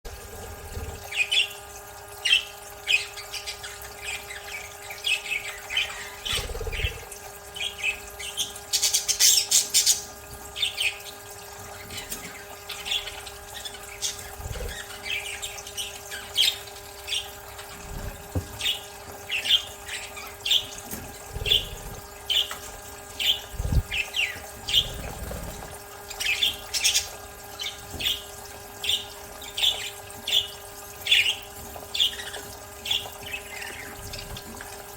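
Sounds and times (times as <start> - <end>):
budgerigars chirping and squawking: 2.2 - 11.1, 11.7 - 34.6
steady hum: 13.0 - 27.1.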